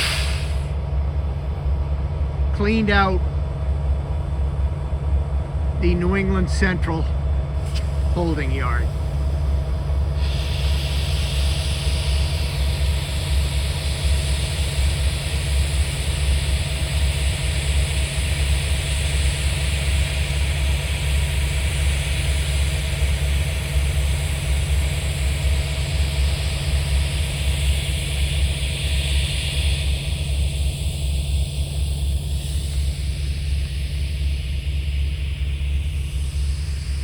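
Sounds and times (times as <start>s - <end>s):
even hiss: 0.0s - 0.8s, 7.6s - 18.6s
engine idling: 0.0s - 37.0s.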